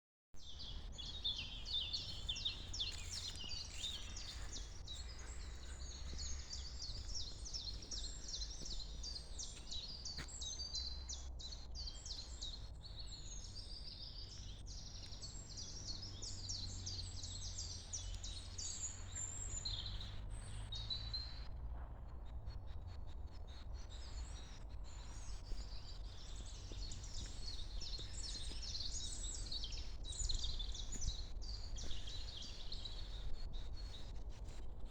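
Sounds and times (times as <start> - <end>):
small birds chirping: 0.4 - 21.4, 22.6 - 34.9.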